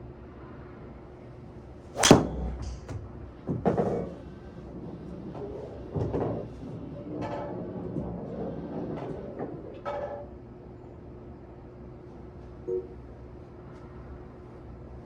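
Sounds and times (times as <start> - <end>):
golf driver striking ball: 2.0 - 3.0.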